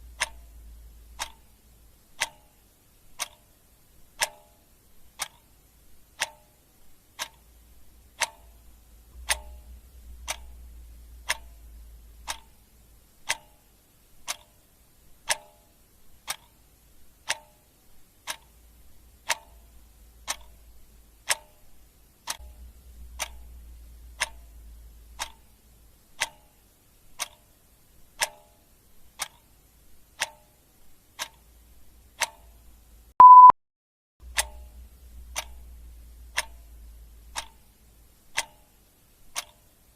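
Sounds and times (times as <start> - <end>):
clock ticking: 0.0 - 33.5, 34.2 - 39.9
short loud beep: 33.2 - 33.6.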